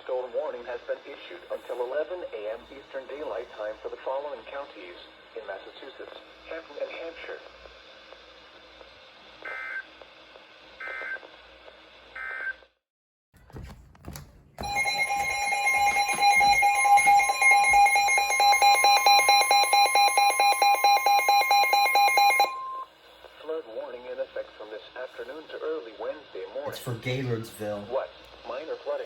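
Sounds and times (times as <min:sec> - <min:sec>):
loud steady alert tone: 0:14.6 - 0:22.8.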